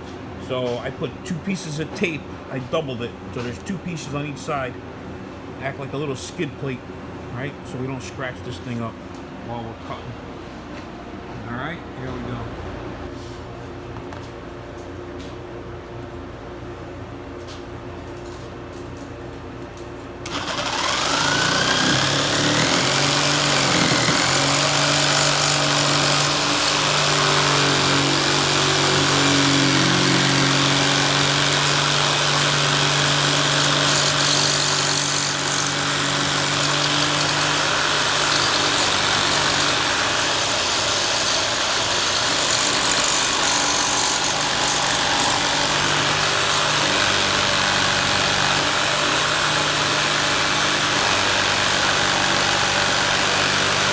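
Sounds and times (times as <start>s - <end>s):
electric jigsaw cutting plastic: 20.2s - 53.9s.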